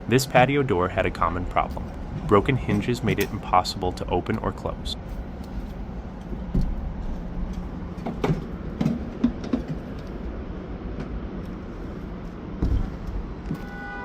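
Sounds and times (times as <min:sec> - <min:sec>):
steady low rumble: 0:00.0 - 0:13.7
short knocks and clunks: 0:06.3 - 0:10.0, 0:12.5 - 0:13.8.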